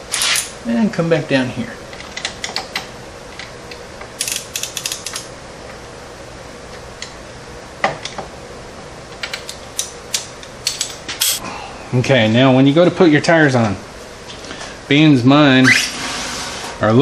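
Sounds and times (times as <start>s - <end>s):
ratchet wrench clicking: 4.2s - 5.3s.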